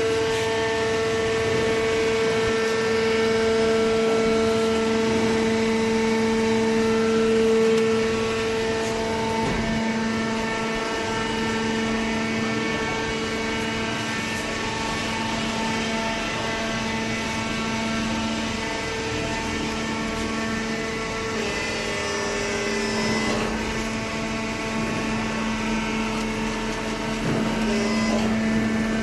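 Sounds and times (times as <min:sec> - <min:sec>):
hydraulic baler motor humming: 0:00.0 - 0:29.0.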